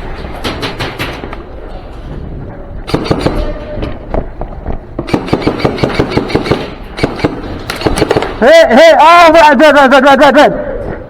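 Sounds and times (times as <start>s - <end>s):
airsoft guns firing: 2.9s - 3.7s, 5.0s - 8.6s.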